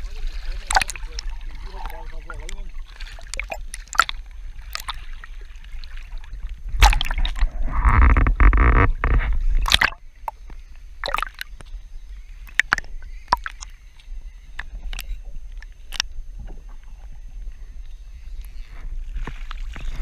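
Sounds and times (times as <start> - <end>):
water sloshing and gurgling: 0.0 - 20.0.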